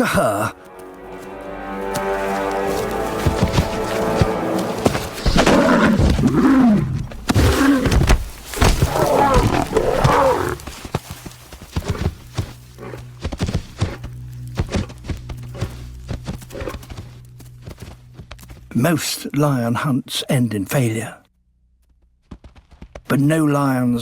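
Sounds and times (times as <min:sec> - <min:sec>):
dull thuds: 0:02.7 - 0:12.6
lioness snarling and growling: 0:03.3 - 0:17.0.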